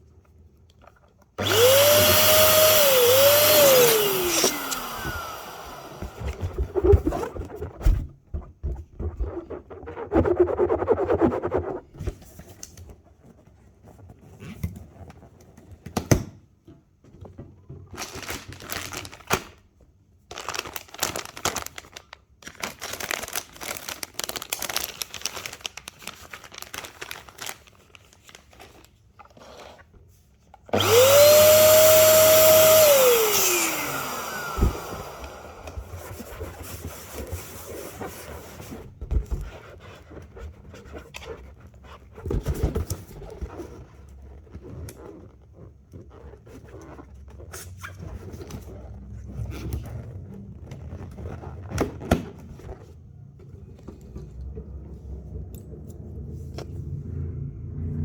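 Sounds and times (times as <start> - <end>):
balloons rustling and clicking: 0.7 - 16.0, 17.8 - 40.4
electric air pump whining: 1.4 - 8.0, 30.7 - 37.1.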